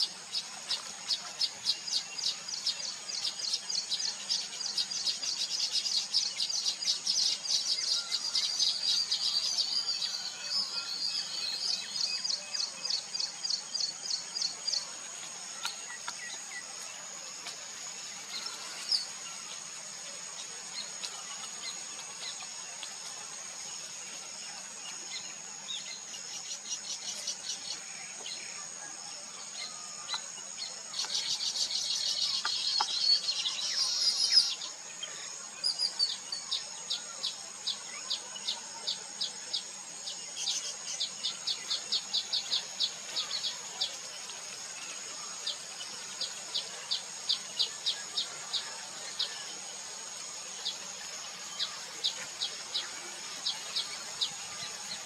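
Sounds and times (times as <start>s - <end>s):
insect drone: 0.0s - 55.0s
small birds chirping: 29.4s - 55.0s.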